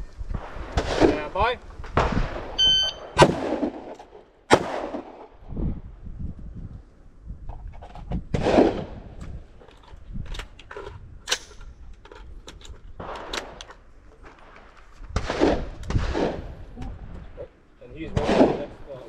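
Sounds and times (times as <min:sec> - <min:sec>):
loud gunshot: 0:00.7 - 0:01.3, 0:02.0 - 0:03.9, 0:04.5 - 0:05.3, 0:08.3 - 0:09.0, 0:15.2 - 0:16.6, 0:18.2 - 0:18.7
gun handling clicks and knocks: 0:09.2 - 0:15.2.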